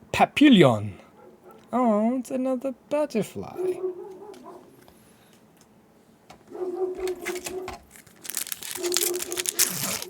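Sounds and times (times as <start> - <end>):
foil pack tearing and crinkling: 7.0 - 10.0.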